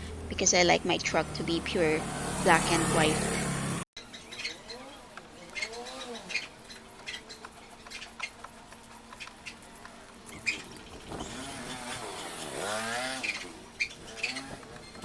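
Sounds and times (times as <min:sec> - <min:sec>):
motor running: 0:08.8 - 0:15.0.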